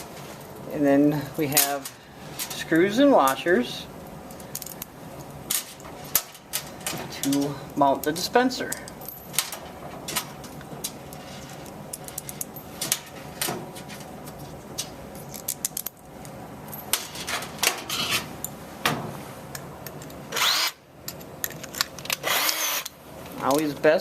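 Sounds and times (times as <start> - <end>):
screws and washers clicking: 19.9 - 22.9
cordless drill driving screw: 20.3 - 20.8, 22.2 - 22.9.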